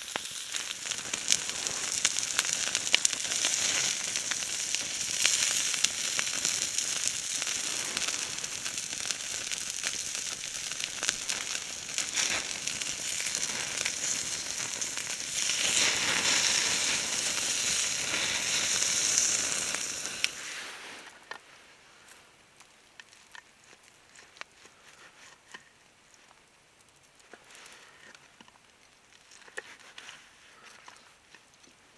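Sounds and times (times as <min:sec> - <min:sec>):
food sizzling in a pan: 0:00.0 - 0:21.1.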